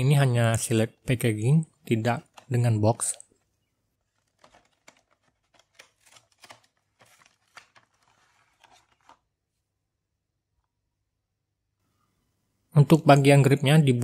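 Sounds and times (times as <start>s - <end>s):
plastic packaging crackling: 4.0s - 9.3s.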